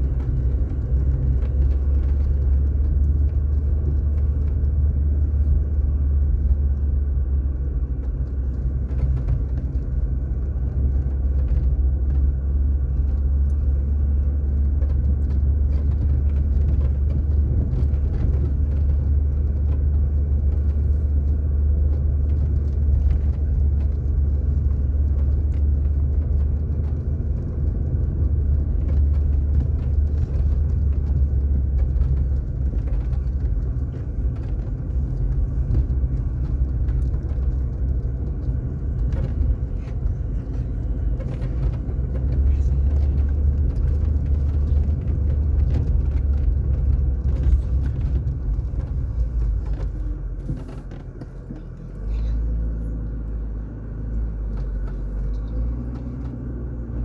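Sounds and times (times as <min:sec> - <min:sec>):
car driving: 0:00.0 - 0:57.0.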